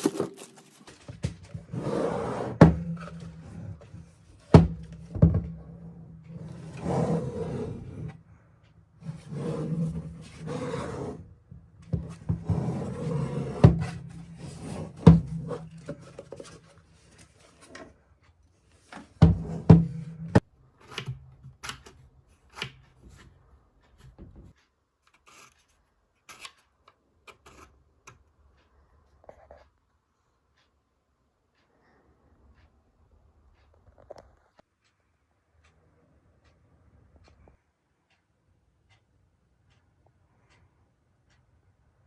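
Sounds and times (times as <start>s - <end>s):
packaging rustling: 0.0s - 1.5s.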